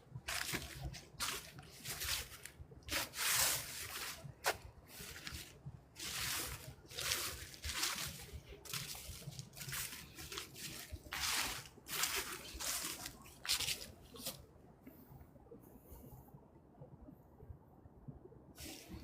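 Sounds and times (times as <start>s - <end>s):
footsteps crunching dry leaves: 0.2s - 14.4s.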